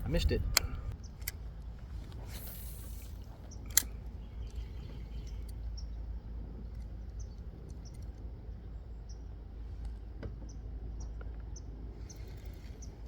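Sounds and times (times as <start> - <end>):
steady low rumble: 0.0 - 13.0
brief hiss: 2.3 - 3.2.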